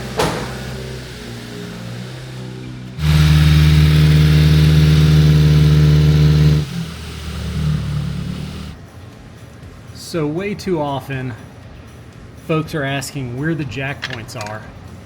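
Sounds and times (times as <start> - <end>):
small truck engine revving: 0.0 - 8.8.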